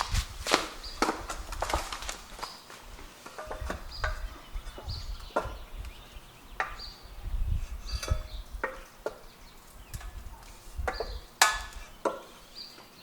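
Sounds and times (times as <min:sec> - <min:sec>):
wrench clanking on metal propeller: 0:07.9 - 0:08.9.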